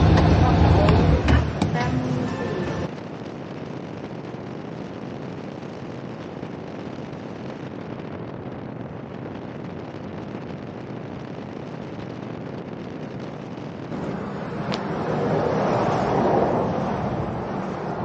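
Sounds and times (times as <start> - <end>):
vehicle road and wind noise: 0.0 - 18.0.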